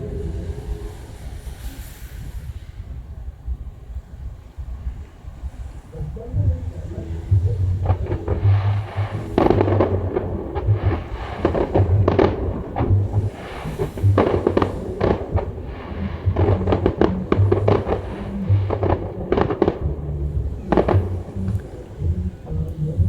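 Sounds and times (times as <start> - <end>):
fireworks crackling: 0.0 - 3.9, 5.4 - 23.0
fireworks bangs: 6.2 - 23.0.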